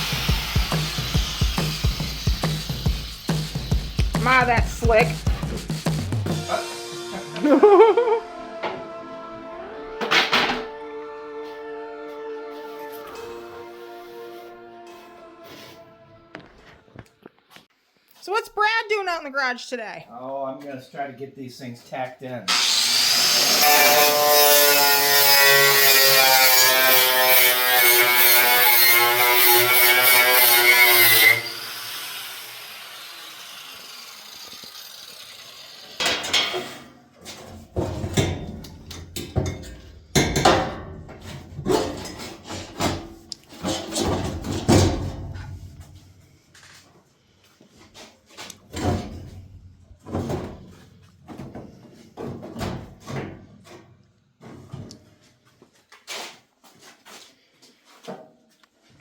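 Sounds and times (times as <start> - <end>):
power drill running: 22.5 - 24.1, 30.9 - 36.0
scraping and knocking on panels: 36.2 - 45.8.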